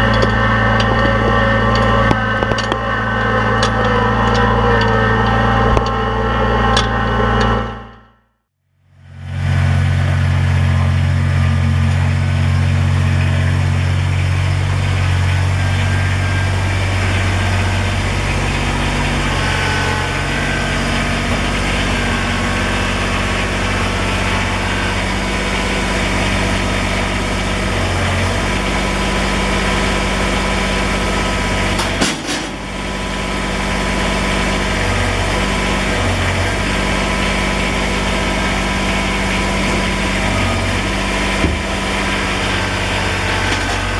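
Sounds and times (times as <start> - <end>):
tractor diesel engine running: 0.0 - 8.1, 8.9 - 43.9.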